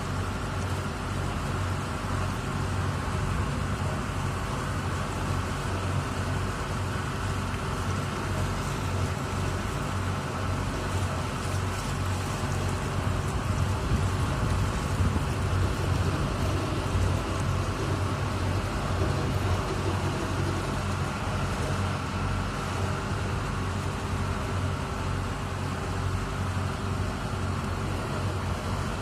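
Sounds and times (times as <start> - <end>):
ferry engine humming: 0.0 - 29.0
hiss of wash and wind: 0.0 - 29.0.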